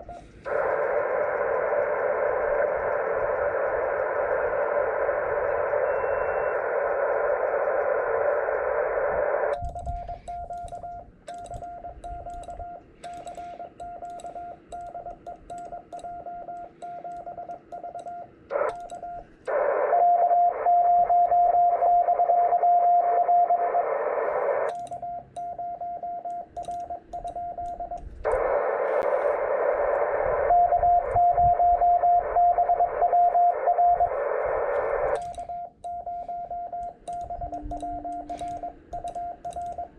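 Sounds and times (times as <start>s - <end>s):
keyed sidetone beeps: 0.0s - 8.8s, 9.5s - 23.7s, 24.7s - 28.6s, 30.4s - 39.9s
radio band hiss: 0.0s - 10.5s, 18.5s - 24.7s, 28.1s - 35.8s
morse code tones: 0.0s - 39.9s
key paddle clicks: 9.5s - 19.0s, 24.7s - 25.6s, 26.3s - 28.1s, 36.8s - 39.9s.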